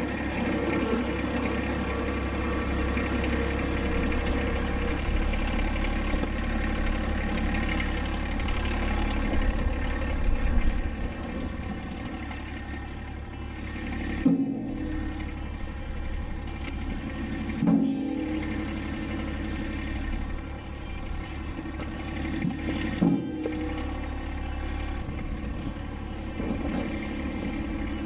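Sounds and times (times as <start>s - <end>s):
motor engine running: 0.0s - 28.0s.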